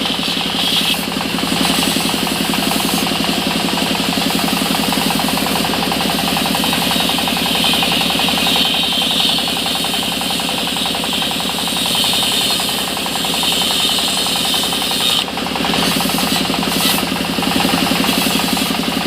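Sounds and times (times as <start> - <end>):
sawmill engine chugging: 0.0 - 19.0
loud high hiss: 4.3 - 17.1.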